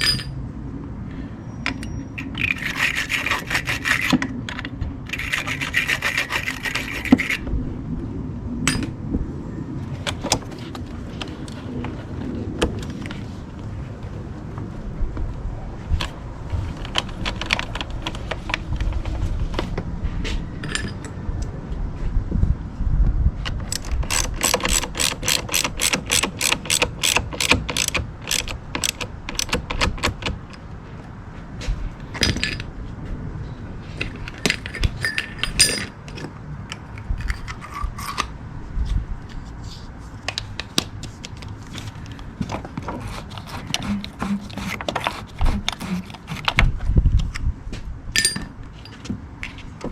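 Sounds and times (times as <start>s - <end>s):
metallic tool clinks and knocks: 0.0s - 0.4s, 34.4s - 36.3s, 48.2s - 49.1s
ratchet clicking: 23.7s - 30.2s.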